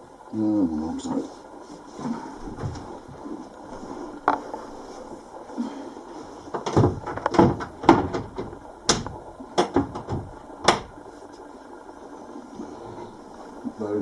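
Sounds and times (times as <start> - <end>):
cabinet door knocks and clacks: 6.6 - 11.0.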